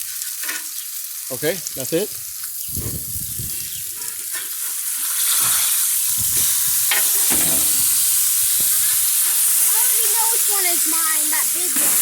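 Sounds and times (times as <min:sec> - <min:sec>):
tomatoes sizzling in oil: 0:00.0 - 0:12.0
utensil knocking and scraping pan: 0:06.2 - 0:09.5.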